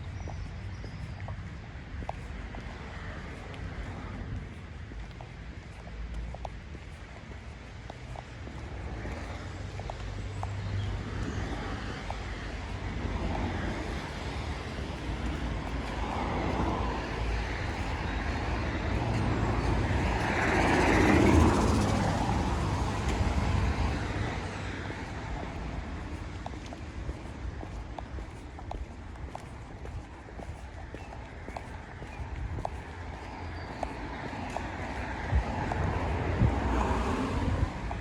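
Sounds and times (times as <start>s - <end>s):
passing car engine: 16.0s - 26.1s.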